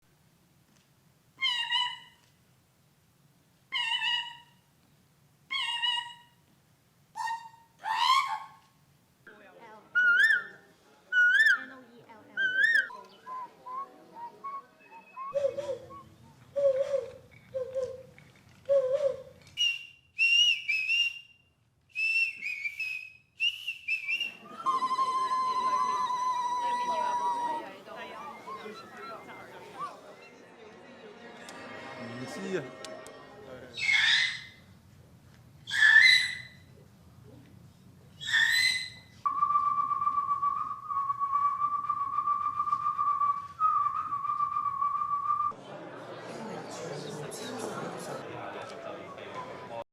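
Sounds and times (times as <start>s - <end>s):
person whistling bird calls: 18.8s - 21.3s, 22.0s - 27.7s, 38.2s - 45.5s
long whistled note: 22.0s - 27.8s.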